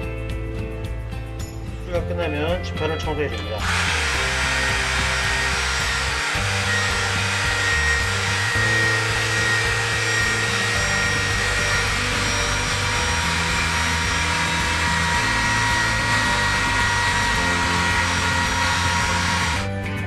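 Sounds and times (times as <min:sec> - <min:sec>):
guitar fretboard being scrubbed: 0:03.6 - 0:19.7
music with stepping bass line: 0:03.6 - 0:20.0.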